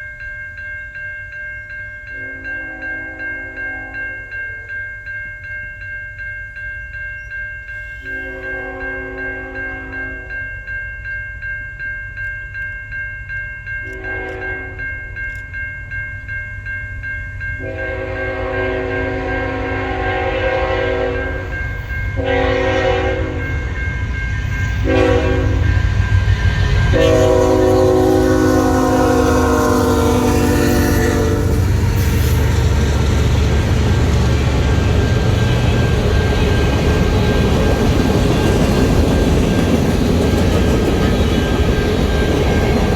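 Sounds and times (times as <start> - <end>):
train horn blasts: 2.2 - 4.8, 8.0 - 10.4, 13.9 - 14.8, 17.6 - 23.8, 24.8 - 37.4
train rumble: 17.6 - 42.9.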